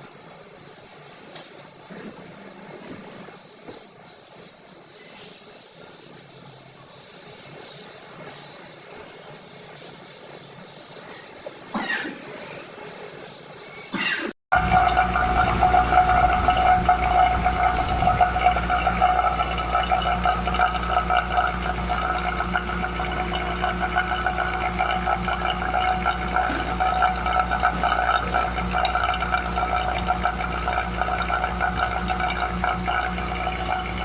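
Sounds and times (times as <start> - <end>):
gurgling flow of liquid: 14.6 - 34.0
low electrical hum: 14.6 - 34.0.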